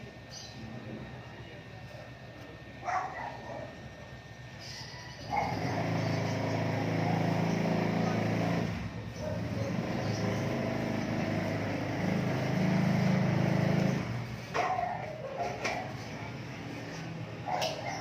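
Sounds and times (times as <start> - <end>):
car engine running: 5.3 - 14.5.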